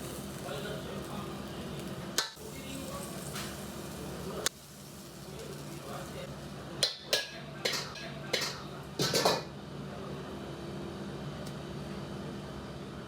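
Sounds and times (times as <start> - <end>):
kitchen hum: 0.0 - 13.0
metal utensils and dishes clattering: 7.0 - 9.5.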